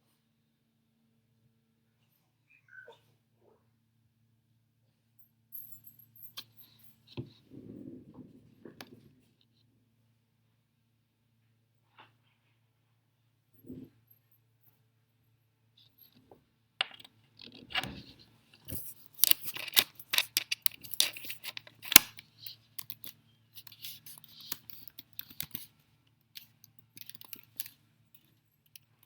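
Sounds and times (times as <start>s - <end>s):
small hard objects clicking and rattling: 18.6s - 25.7s, 26.4s - 29.0s.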